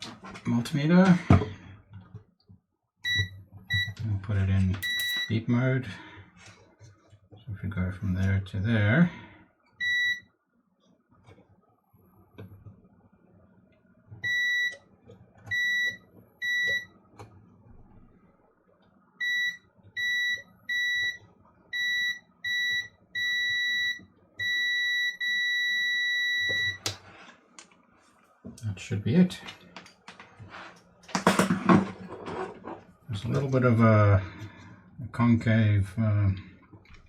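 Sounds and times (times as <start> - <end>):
multimeter short high beeps: 4.8 - 5.3
multimeter steady tone: 4.8 - 5.4, 19.2 - 26.9.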